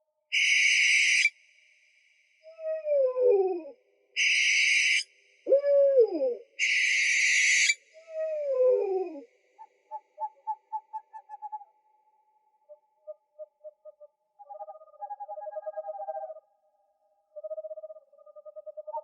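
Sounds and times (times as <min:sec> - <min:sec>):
owl hooting: 0:00.3 - 0:01.3, 0:02.5 - 0:09.2
owl hissing screeches: 0:00.4 - 0:01.3, 0:04.2 - 0:05.0, 0:06.6 - 0:07.8.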